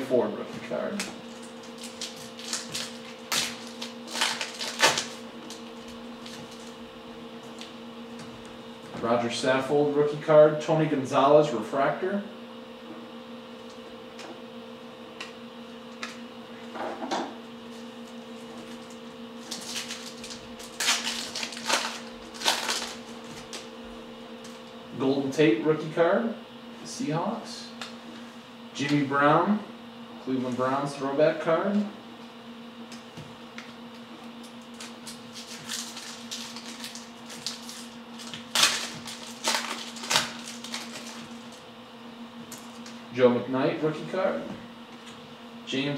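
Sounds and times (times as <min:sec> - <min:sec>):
steady hum: 0:00.0 - 0:45.9
trading cards rustling: 0:01.6 - 0:06.8, 0:18.6 - 0:23.7, 0:34.8 - 0:41.6.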